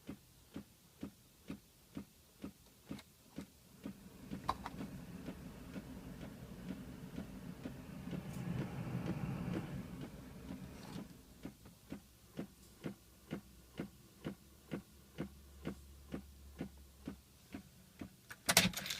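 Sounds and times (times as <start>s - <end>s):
car clicking: 1.9s - 18.9s
low hum: 3.7s - 11.6s.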